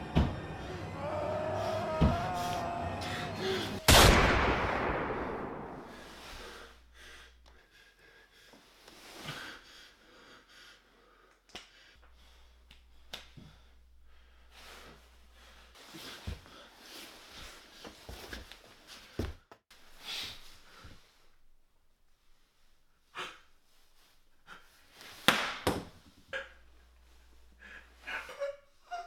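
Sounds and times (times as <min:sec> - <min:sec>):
gunshot with echo: 0:03.8 - 0:06.3
breaths: 0:05.5 - 0:18.0, 0:18.9 - 0:21.4, 0:26.3 - 0:28.4.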